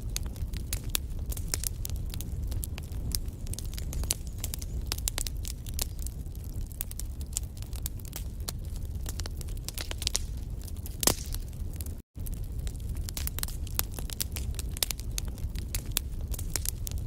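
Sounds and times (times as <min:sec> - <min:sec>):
fire crackling and popping: 0:00.0 - 0:17.0
low rumble of flames: 0:00.0 - 0:17.0.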